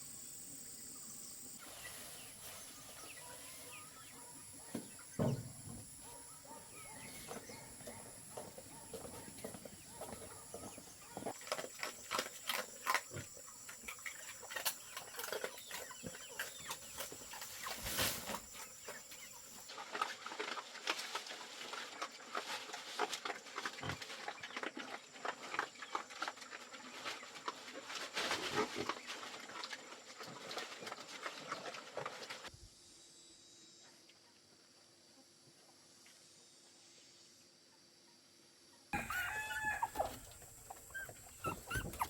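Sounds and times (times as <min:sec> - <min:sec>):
chickens clucking: 0:01.6 - 0:11.9, 0:12.6 - 0:19.4, 0:39.0 - 0:42.0
rustling: 0:14.5 - 0:19.4, 0:39.0 - 0:42.0.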